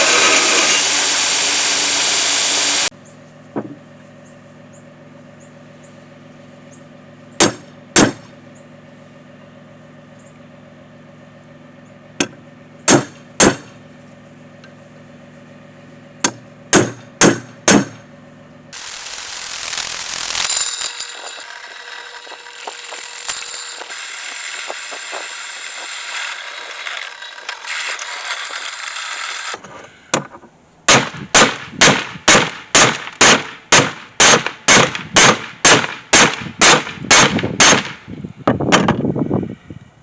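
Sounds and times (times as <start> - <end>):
steady hissing rush: 18.8 - 29.6.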